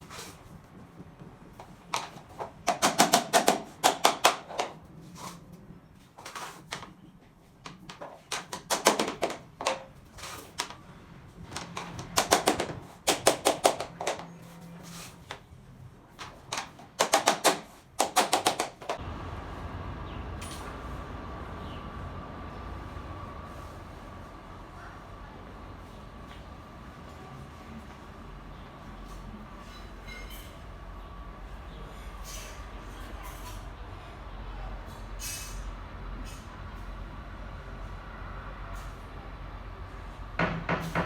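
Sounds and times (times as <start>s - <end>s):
steady low hum: 19.0s - 29.5s.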